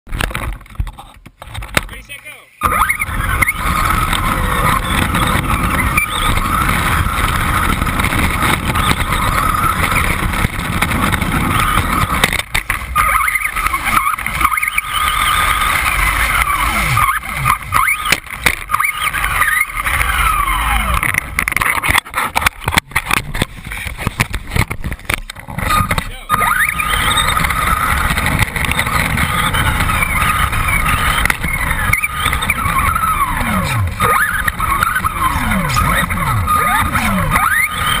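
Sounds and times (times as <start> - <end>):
knocks and rattles: 0.1 - 1.9, 3.9 - 14.7, 20.8 - 26.1
rc car motor whining: 2.6 - 38.0.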